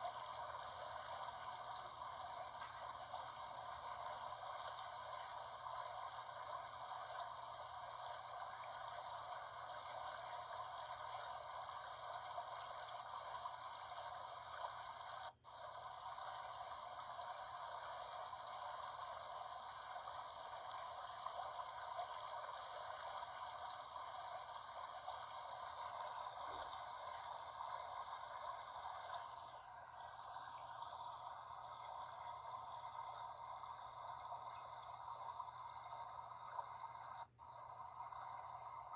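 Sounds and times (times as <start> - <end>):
brook flowing over rocks: 16.4 - 35.6.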